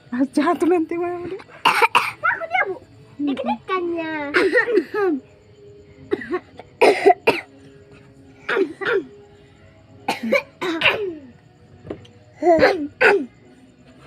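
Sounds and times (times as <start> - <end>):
person coughing: 1.6 - 2.2, 6.1 - 7.5, 8.5 - 9.1, 10.1 - 11.2, 12.4 - 13.3.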